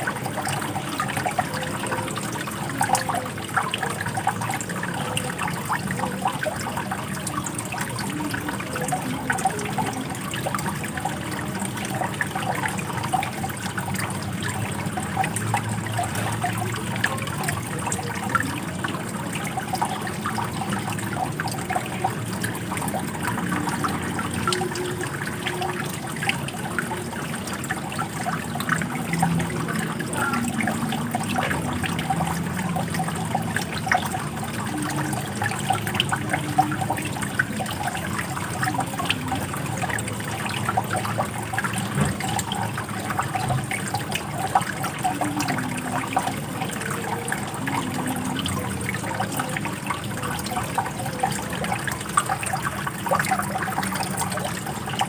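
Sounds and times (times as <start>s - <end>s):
running water trickling: 0.0s - 55.0s.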